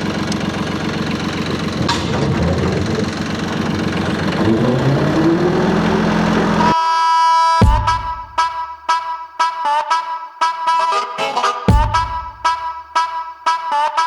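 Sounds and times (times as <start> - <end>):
tractor engine revving up: 0.0 - 6.8.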